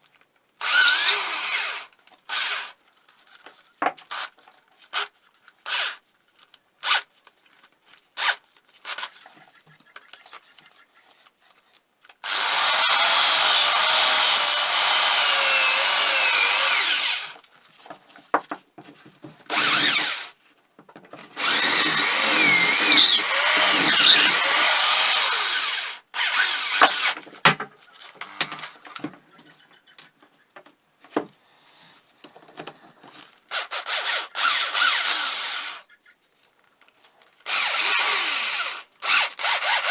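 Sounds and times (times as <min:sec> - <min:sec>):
power tool whine: 0:12.2 - 0:17.4, 0:19.5 - 0:20.3, 0:21.4 - 0:27.2, 0:33.8 - 0:35.8, 0:37.5 - 0:39.9.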